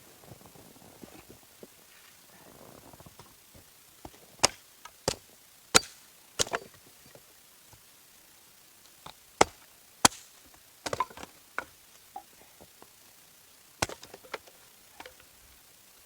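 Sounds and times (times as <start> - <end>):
axe strikes chopping wood: 5.8 - 6.7, 9.4 - 11.3, 13.8 - 14.1.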